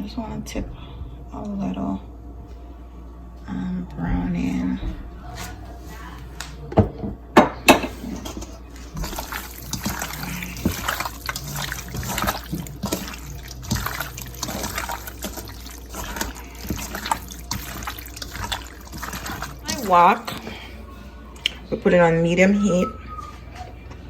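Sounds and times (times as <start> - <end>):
wet squishing and sloshing: 7.9 - 21.9.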